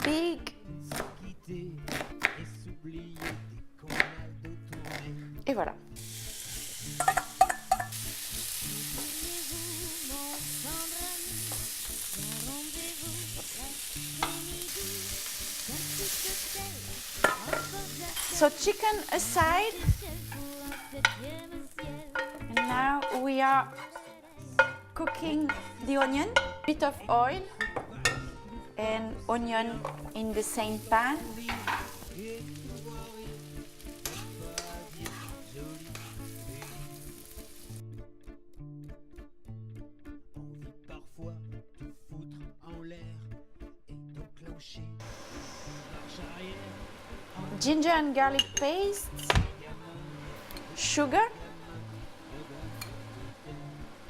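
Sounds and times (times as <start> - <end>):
chicken sizzling in a pan: 6.0 - 26.6, 30.0 - 37.8, 45.0 - 54.0
utensil scraping a pan: 22.1 - 26.7, 31.3 - 32.0
background music with bass: 49.0 - 54.0.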